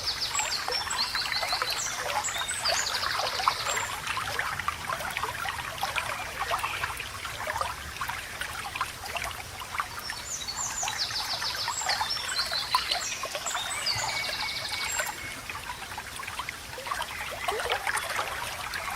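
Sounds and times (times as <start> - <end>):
stream babbling: 0.0 - 18.9
songbird trilling: 12.2 - 15.4.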